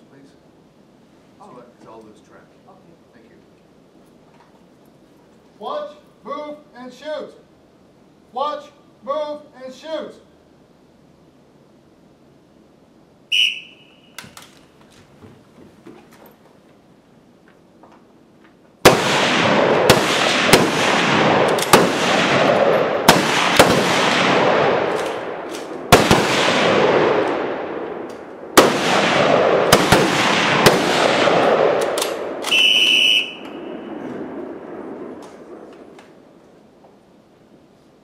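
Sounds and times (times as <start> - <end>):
whistle blast: 13.3 - 14.3, 32.4 - 33.8
rifle shots echoing: 18.8 - 35.9.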